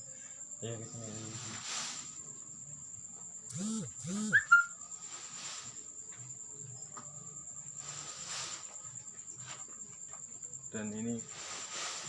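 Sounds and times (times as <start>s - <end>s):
crickets trilling: 0.0s - 12.0s.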